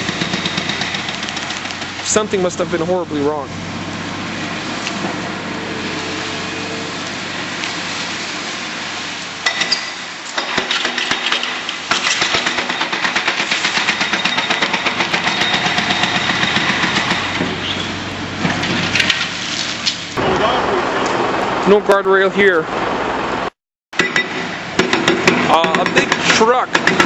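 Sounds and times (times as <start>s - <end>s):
demolition hammer pounding concrete: 0.0s - 3.5s, 9.4s - 19.4s, 24.0s - 27.0s
machine running: 0.0s - 9.5s, 12.2s - 19.3s.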